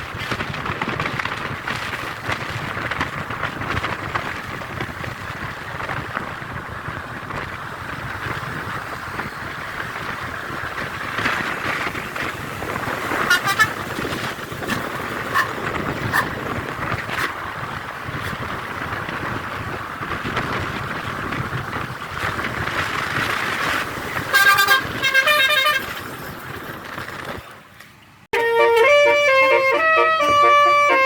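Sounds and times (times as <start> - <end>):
traffic and street noise: 0.0 - 31.0
bus musical horn: 13.2 - 13.9, 24.2 - 26.0, 28.3 - 31.0.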